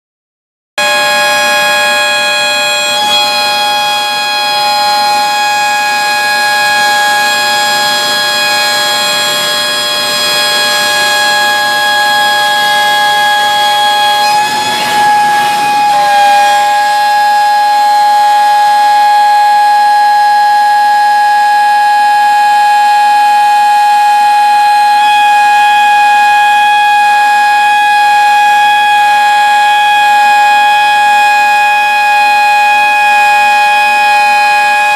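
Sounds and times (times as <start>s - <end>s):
router spindle milling panel: 0.8s - 18.0s.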